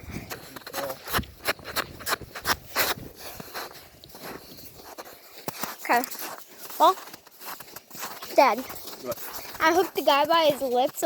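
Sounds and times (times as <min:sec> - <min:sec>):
boots crunching on snowy ice: 0:00.3 - 0:11.0.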